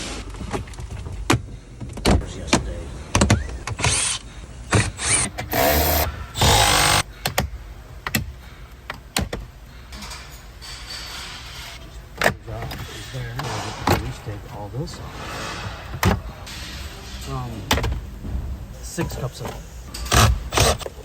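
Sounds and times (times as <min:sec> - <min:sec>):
tools clicking and clanking: 0:04.7 - 0:18.1, 0:18.9 - 0:21.0
power tool bursts: 0:05.0 - 0:07.1.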